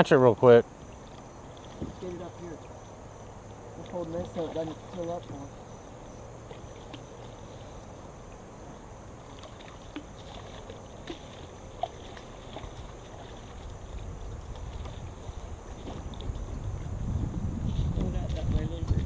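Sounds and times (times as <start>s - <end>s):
river hiss: 0.0s - 16.1s
wind rumble on microphone: 9.6s - 19.0s.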